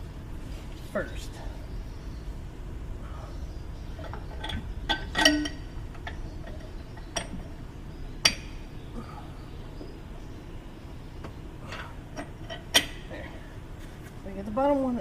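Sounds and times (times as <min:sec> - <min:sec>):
metal clinks and knocks: 0:04.0 - 0:07.6.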